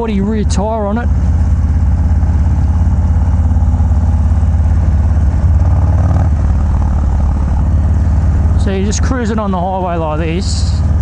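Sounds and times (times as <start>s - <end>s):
motorcycle engine cruising: 0.0s - 11.0s.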